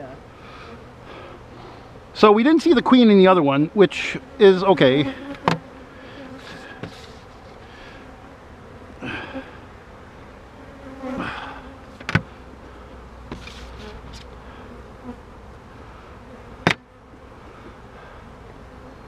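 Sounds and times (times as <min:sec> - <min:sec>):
bees buzzing: 0:00.0 - 0:19.0
sharp knocks: 0:05.4 - 0:05.6.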